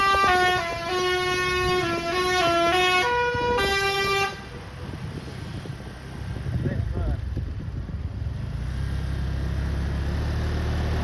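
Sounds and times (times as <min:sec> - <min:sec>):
musical bus horn: 0:00.0 - 0:04.7
engine and road noise: 0:00.0 - 0:11.0.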